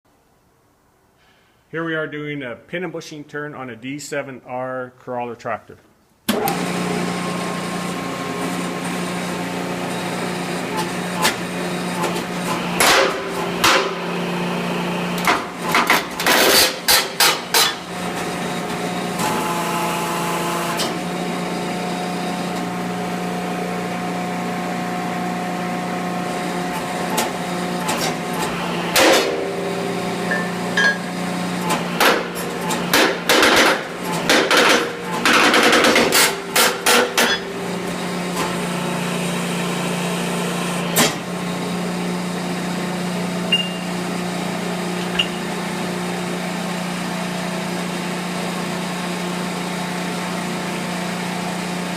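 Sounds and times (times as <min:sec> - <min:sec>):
hydraulic press humming: 0:06.3 - 0:47.0.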